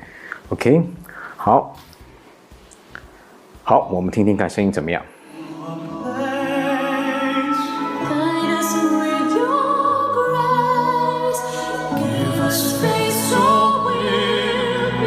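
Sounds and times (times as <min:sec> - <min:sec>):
operatic singing over loudspeakers: 0:05.2 - 0:15.0.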